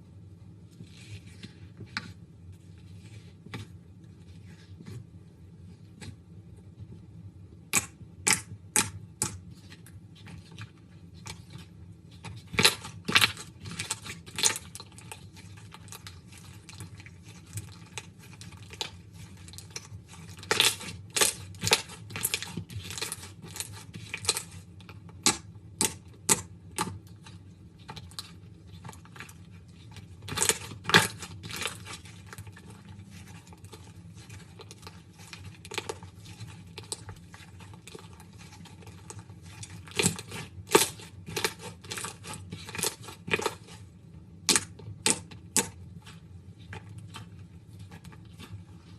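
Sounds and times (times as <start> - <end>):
slime popping and crackling: 12.1 - 43.8, 44.4 - 45.8.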